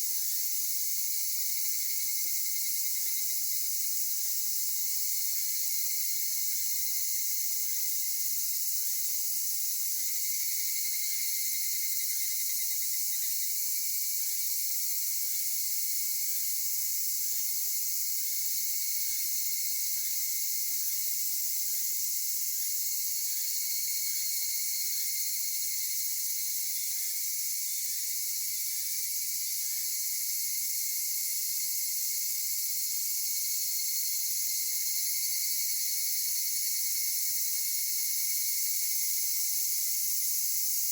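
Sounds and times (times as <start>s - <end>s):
cicadas shrilling: 0.0s - 40.9s.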